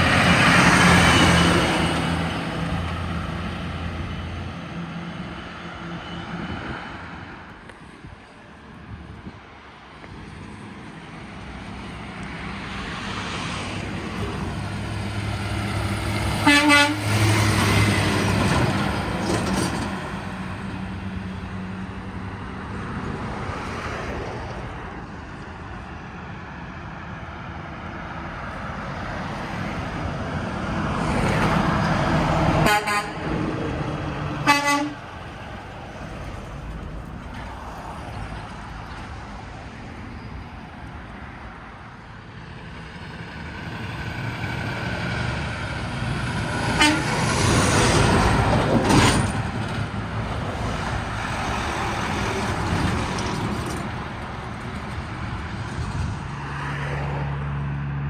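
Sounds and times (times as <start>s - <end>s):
heavy trucks passing: 0.0s - 58.0s
truck horn blasts: 16.4s - 17.4s, 32.6s - 33.4s, 34.4s - 35.1s, 46.7s - 47.4s.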